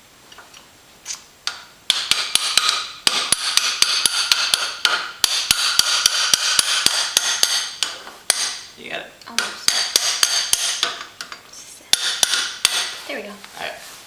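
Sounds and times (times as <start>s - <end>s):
hammer striking metal rod: 1.5s - 8.7s, 9.3s - 13.0s.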